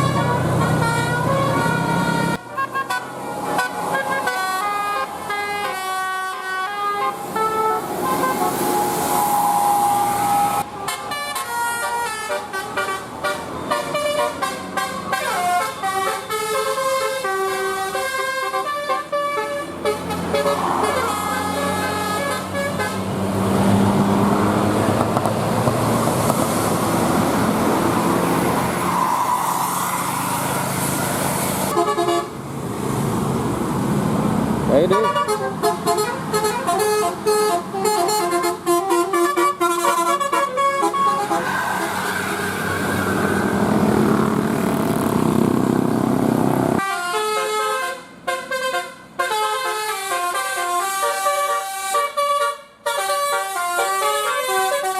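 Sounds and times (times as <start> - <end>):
musical bus air horns: 0.0 - 23.2, 30.8 - 32.4, 34.7 - 43.5, 46.8 - 54.9.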